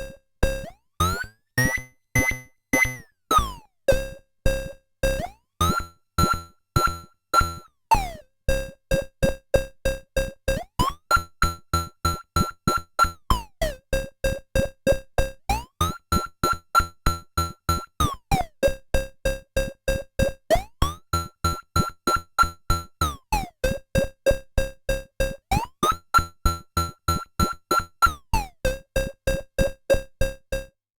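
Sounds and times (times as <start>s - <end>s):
synthesizer playing plucky notes: 1.0s - 3.4s, 5.6s - 7.6s.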